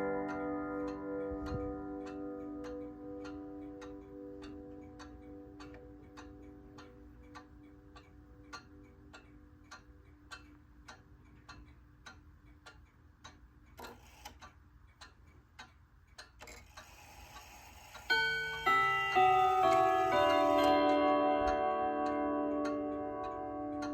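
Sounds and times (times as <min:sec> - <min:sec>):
clock chime melody: 0:00.0 - 0:07.5, 0:18.1 - 0:23.9
clock movement clicks: 0:00.0 - 0:23.9
pendulum clock ticking: 0:00.0 - 0:23.9.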